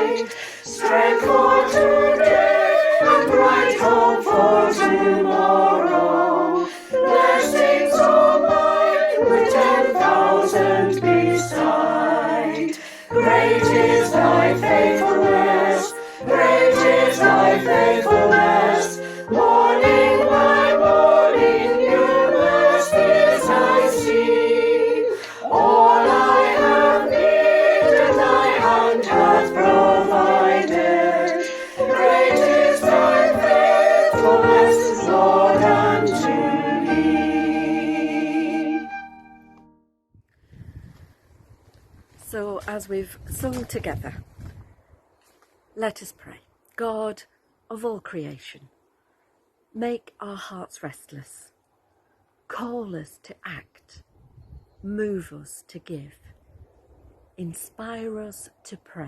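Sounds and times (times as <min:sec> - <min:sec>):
choir singing a hymn: 0:00.0 - 0:39.3.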